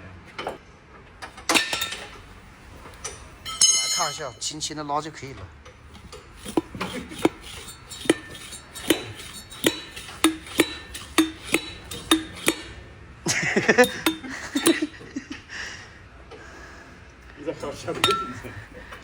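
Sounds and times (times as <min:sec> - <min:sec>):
metal rattling clatter: 0:01.3 - 0:04.5, 0:05.9 - 0:15.1
metal parts clinking: 0:01.4 - 0:04.6, 0:06.0 - 0:12.8, 0:13.8 - 0:15.0, 0:18.0 - 0:18.6.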